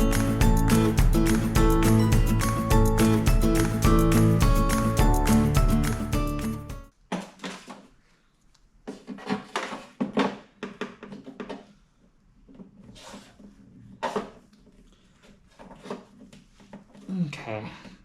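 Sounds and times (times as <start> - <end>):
knocks scrapes and rattles: 8.9 - 11.8, 15.3 - 17.1.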